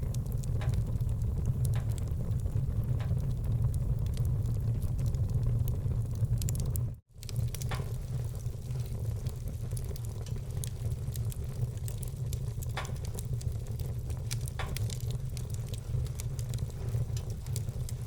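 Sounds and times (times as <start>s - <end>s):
loud fire pops: 0.0s - 18.0s
wood fire crackling: 0.0s - 18.0s.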